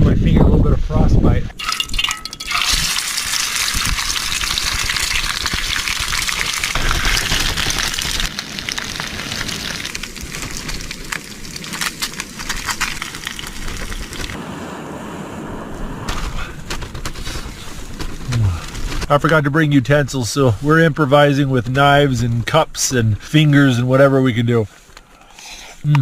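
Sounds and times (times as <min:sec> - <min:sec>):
food sizzling and crackling: 0:01.6 - 0:14.4.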